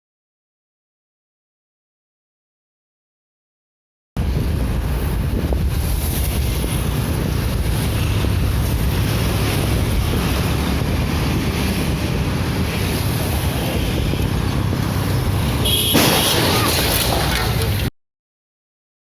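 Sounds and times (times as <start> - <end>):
wind buffeting microphone: 4.2 - 16.0.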